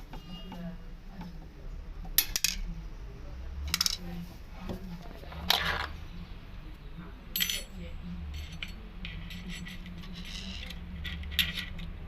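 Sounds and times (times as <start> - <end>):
metal objects clinking: 7.4 - 11.9.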